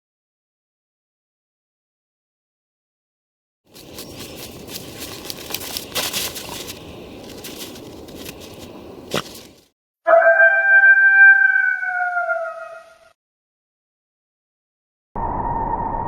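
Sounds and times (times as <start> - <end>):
crackling rustling noise: 3.7 - 9.7
wolf howling: 10.1 - 13.1.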